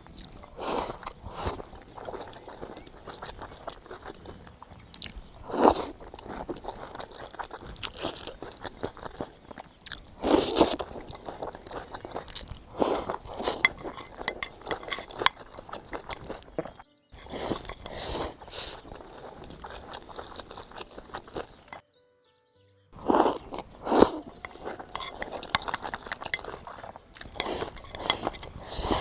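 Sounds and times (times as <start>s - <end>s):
crunching bites: 0.0s - 21.8s
person chewing food: 0.0s - 21.8s, 23.0s - 29.0s.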